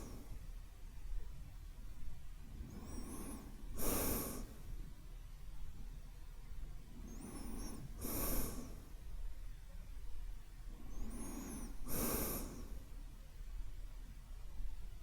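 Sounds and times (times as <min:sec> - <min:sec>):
man breathing deeply: 0:02.6 - 0:04.7, 0:07.0 - 0:09.0, 0:10.8 - 0:12.9.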